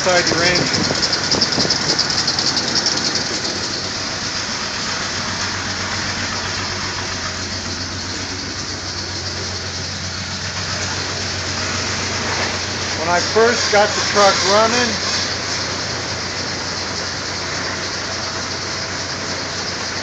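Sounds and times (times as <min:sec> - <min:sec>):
truck engine idling: 0:00.0 - 0:20.0.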